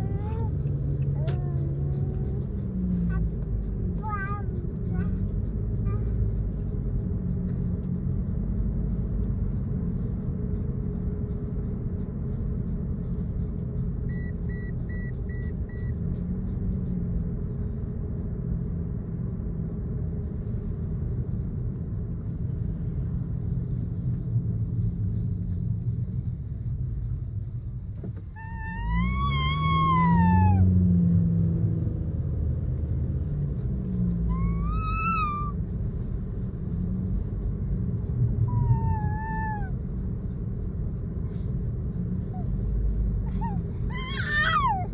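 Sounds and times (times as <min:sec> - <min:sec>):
car road noise rumble: 0:00.0 - 0:44.9
puppy whining and howling: 0:28.4 - 0:30.9, 0:34.2 - 0:35.6, 0:38.4 - 0:39.8, 0:43.2 - 0:44.9.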